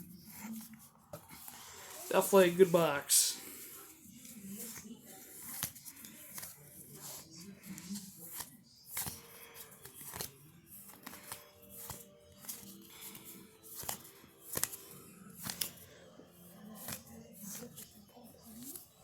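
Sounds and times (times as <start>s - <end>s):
faint background music: 0.0s - 19.0s
cards being flicked through: 4.2s - 18.9s.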